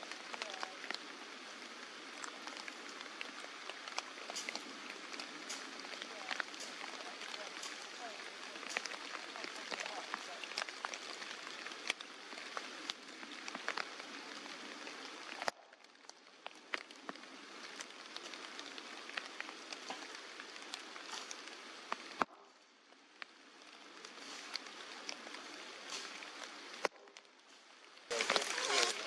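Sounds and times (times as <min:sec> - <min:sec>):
steady rain falling: 0:00.0 - 0:29.0.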